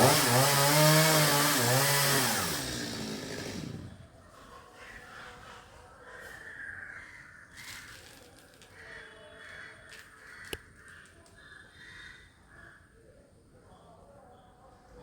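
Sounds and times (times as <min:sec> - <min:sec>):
crow cawing: 0:08.8 - 0:12.7.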